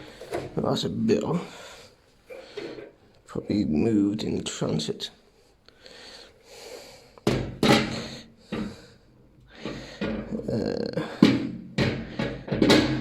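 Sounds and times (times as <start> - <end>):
household items knocking and clunking: 0.0 - 0.6, 7.2 - 8.9, 9.5 - 13.0.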